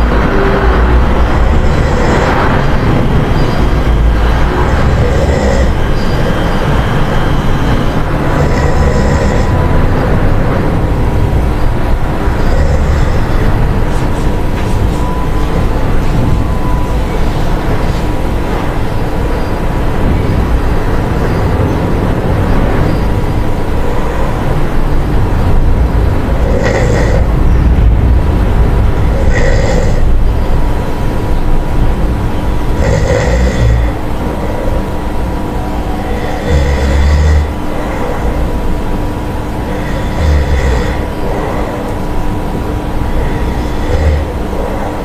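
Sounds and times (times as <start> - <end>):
steady low rumble: 0.0 - 45.0
monkey snoring: 1.2 - 3.0, 4.3 - 6.4, 8.2 - 10.2, 11.4 - 15.0, 26.1 - 27.9, 28.9 - 30.4, 32.7 - 35.0, 36.0 - 38.5, 39.6 - 42.3, 43.0 - 45.0.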